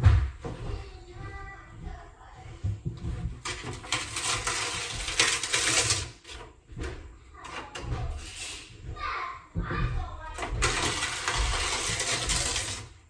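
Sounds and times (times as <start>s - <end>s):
wallpaper ripping: 3.4s - 6.5s, 10.4s - 13.0s.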